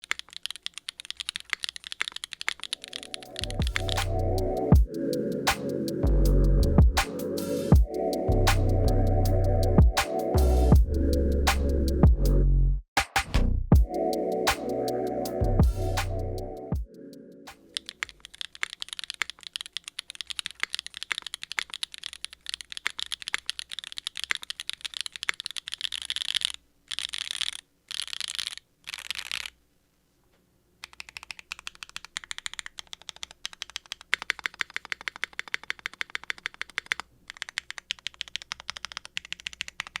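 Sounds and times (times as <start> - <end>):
mechanical keyboard typing: 0.0 - 6.0, 17.5 - 29.5, 30.8 - 40.0.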